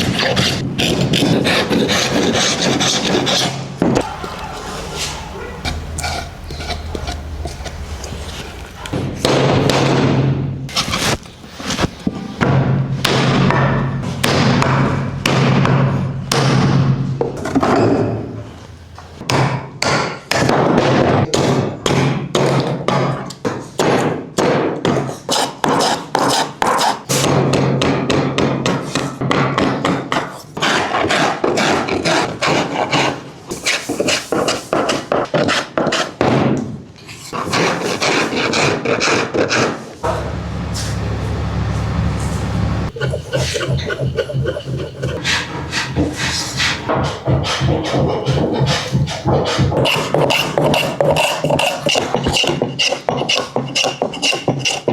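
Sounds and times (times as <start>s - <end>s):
steady low hum: 40.0s - 48.6s.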